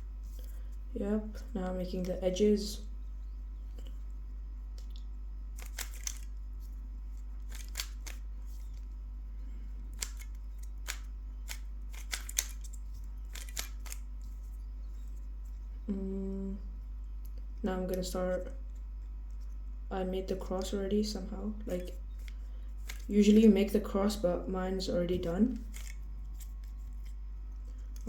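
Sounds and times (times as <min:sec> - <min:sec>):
plastic puzzle cube clicks: 0:05.6 - 0:06.4, 0:07.4 - 0:08.9, 0:09.9 - 0:14.0, 0:21.8 - 0:23.1.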